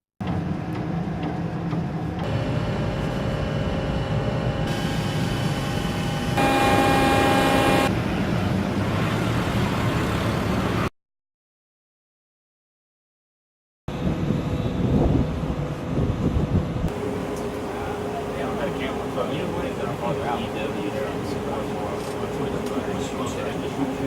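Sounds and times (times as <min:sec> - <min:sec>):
heavy mechanical rumble: 0:00.2 - 0:10.9, 0:13.9 - 0:24.0
mechanical whining tones: 0:02.2 - 0:07.9.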